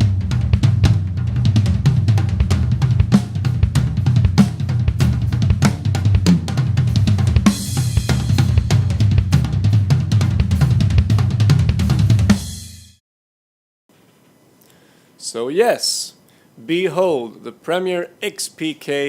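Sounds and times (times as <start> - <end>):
drum kit groove: 0.0 - 13.0.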